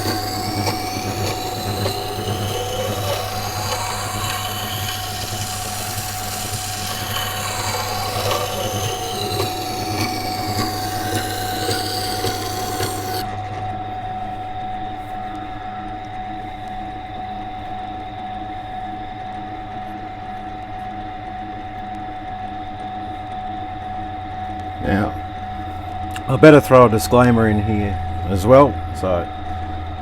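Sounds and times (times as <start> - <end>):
grinder motor hum: 0.0 - 14.7.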